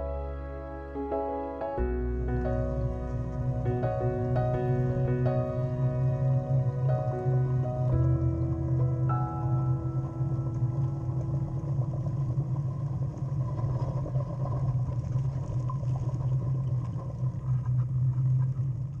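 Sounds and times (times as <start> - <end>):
low rumble: 0.0 - 19.0.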